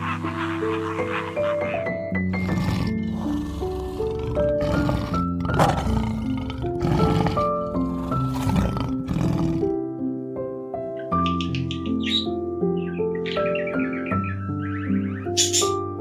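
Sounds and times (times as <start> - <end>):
big cat roaring: 0.0 - 9.7
background music with plain melody: 0.0 - 16.0.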